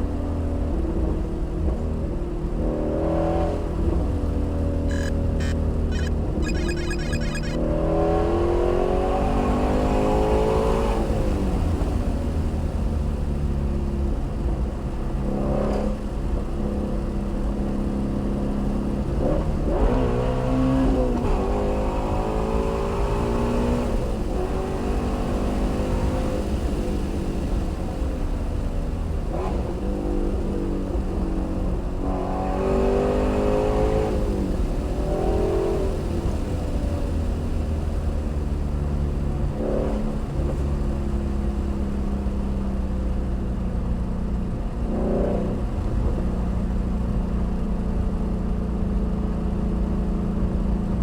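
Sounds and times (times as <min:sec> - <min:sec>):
car engine accelerating: 0:02.7 - 0:43.2.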